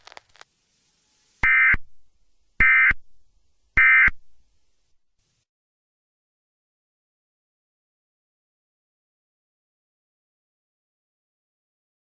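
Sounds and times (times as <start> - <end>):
buzzy electronic data bursts: 0.0 - 1.8.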